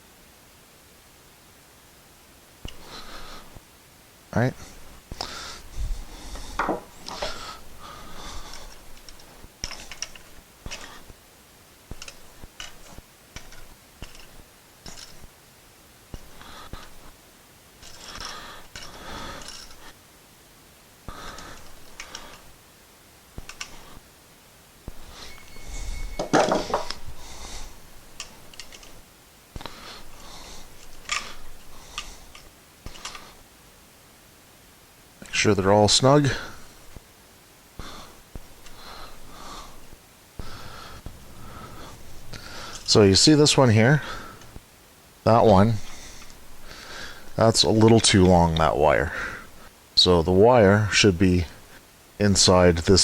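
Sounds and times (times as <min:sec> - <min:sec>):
screwdriver clicking and scraping: 0:08.3 - 0:11.2, 0:11.9 - 0:15.3, 0:16.1 - 0:17.1, 0:17.8 - 0:20.0, 0:21.2 - 0:22.5, 0:23.4 - 0:24.0, 0:24.9 - 0:29.0, 0:29.6 - 0:33.4.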